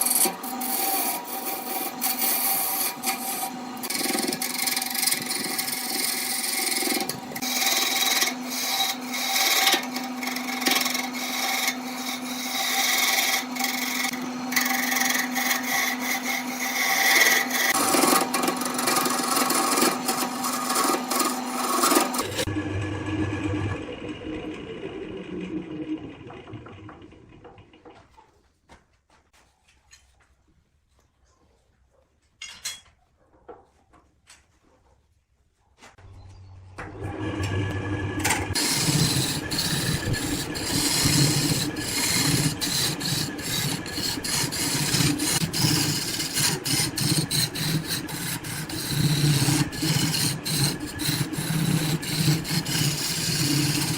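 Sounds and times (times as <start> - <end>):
tool scraping spinning wood: 0.0 - 22.6, 37.4 - 53.9
lathe motor hum: 0.0 - 27.7, 37.0 - 53.9.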